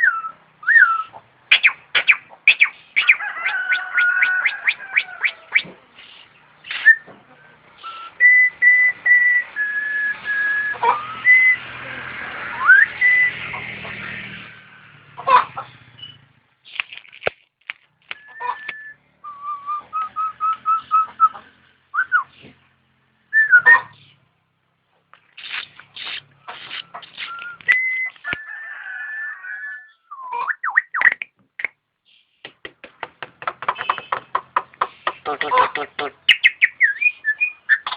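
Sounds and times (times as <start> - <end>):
harsh rasping bird calls: 0.0 - 8.3, 25.2 - 28.9, 33.4 - 37.9
starling whistling song: 0.0 - 14.3, 18.1 - 22.5, 23.3 - 24.2, 25.4 - 31.7, 36.3 - 37.9.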